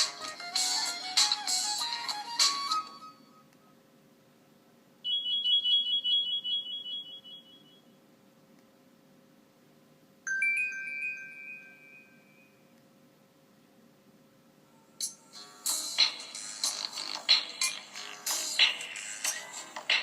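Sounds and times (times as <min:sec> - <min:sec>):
high beeps: 0:05.1 - 0:07.9
lower chime: 0:10.3 - 0:12.7.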